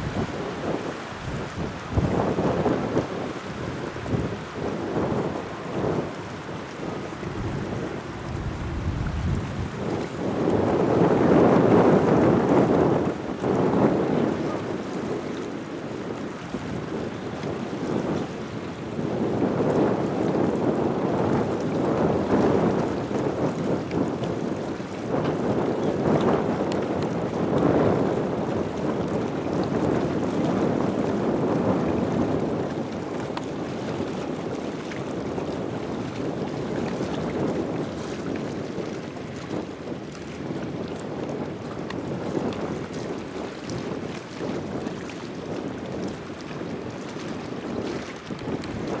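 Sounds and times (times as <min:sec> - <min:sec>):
wind on microphone: 0:00.0 - 0:49.0.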